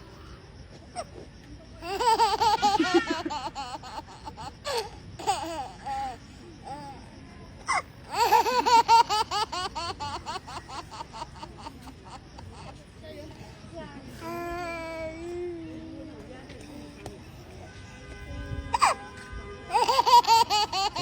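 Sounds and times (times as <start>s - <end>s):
high-pitched giggling laughter: 1.0s - 6.2s, 7.7s - 12.7s, 19.7s - 21.0s.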